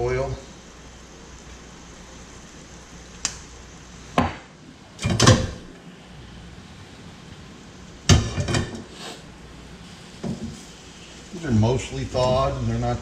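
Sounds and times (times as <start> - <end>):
kitchen clatter at stove: 5.0 - 5.7, 8.0 - 9.2, 10.2 - 10.7.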